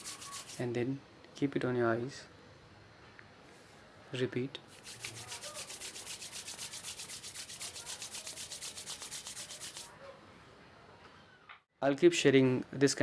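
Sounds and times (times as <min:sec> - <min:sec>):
hands rubbing together: 0:00.0 - 0:00.6, 0:04.7 - 0:09.9.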